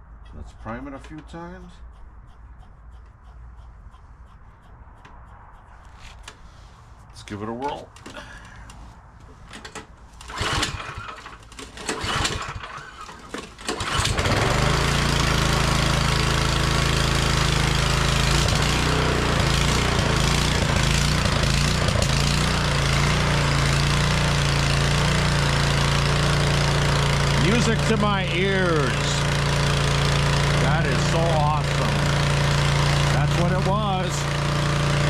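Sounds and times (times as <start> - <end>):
snowblower engine cranking and running: 9.4 - 35.0.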